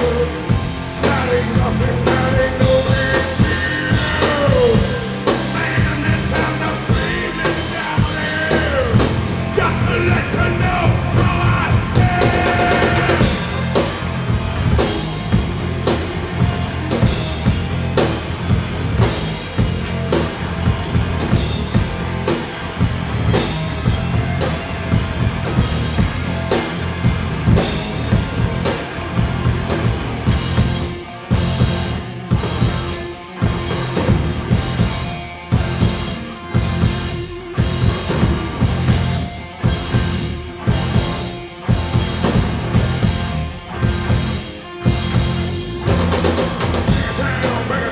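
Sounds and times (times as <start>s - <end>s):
person singing: 0.0s - 13.6s, 46.8s - 47.9s
bass: 0.0s - 47.9s
rock drum beat: 0.0s - 47.9s.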